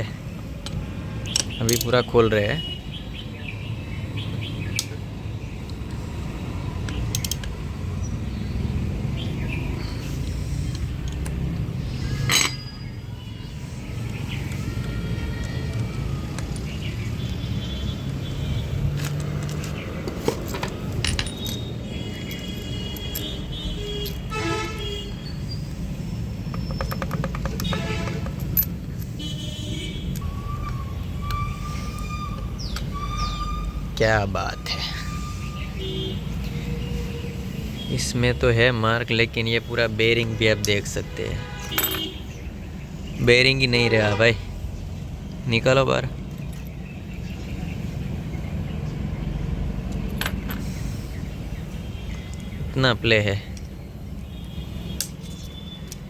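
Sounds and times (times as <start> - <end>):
low traffic rumble: 0.0 - 56.0
metallic tool clicks: 6.9 - 7.6
vehicle horns honking: 17.4 - 18.9, 21.3 - 25.5, 27.5 - 38.2, 39.6 - 42.4, 54.2 - 56.0
birds chirping faintly: 28.9 - 56.0.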